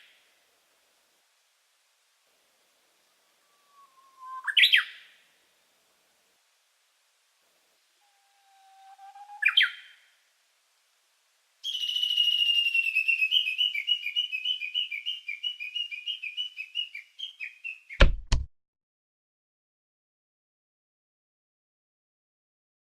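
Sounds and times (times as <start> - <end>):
bird short rising call: 3.1 - 4.8, 8.0 - 9.8
long whistled bird call: 3.1 - 5.0, 8.0 - 10.1, 11.6 - 18.0
button press clicks: 18.0 - 18.5.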